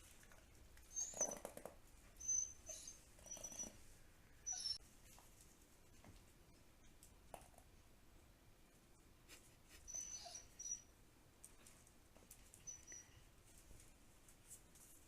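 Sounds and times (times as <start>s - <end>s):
dog squeaking: 0.9s - 1.6s, 2.2s - 3.8s, 4.5s - 4.8s, 9.9s - 10.9s.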